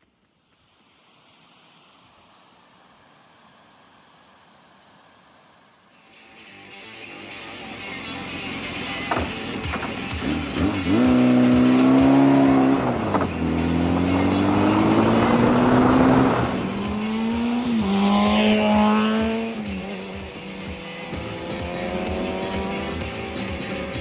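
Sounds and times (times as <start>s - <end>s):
motorcycle engine accelerating: 8.5s - 24.0s.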